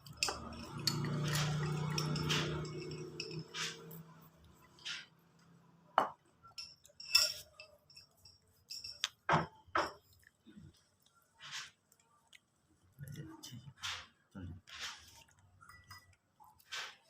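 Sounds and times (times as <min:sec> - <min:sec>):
small hard objects clinking: 0:00.0 - 0:05.1, 0:06.0 - 0:10.0.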